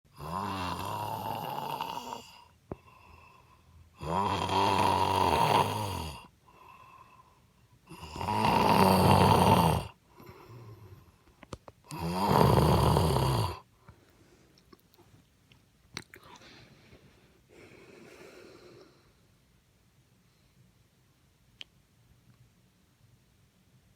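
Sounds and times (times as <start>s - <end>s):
woman snoring loudly: 0.1s - 2.5s, 4.0s - 6.3s, 7.9s - 10.0s, 11.9s - 13.6s
quiet breaths: 0.1s - 22.6s.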